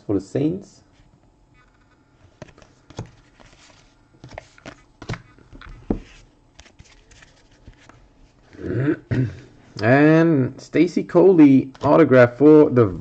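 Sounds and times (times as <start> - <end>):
cards sliding rustles: 1.0 - 8.6.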